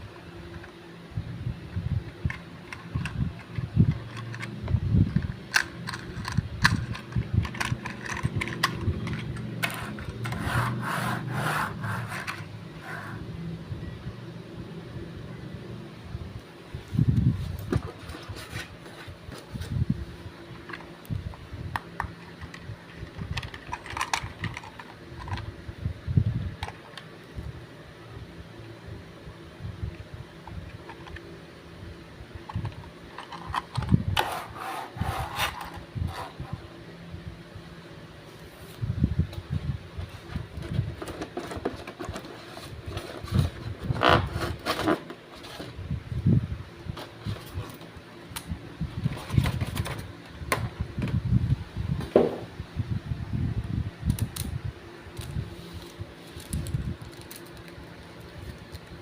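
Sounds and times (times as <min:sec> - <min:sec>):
steady hum: 0:00.0 - 0:59.0
scraping rustles: 0:17.3 - 0:19.8, 0:33.1 - 0:36.7, 0:40.0 - 0:45.8
hands handling packaging: 0:55.2 - 0:59.0.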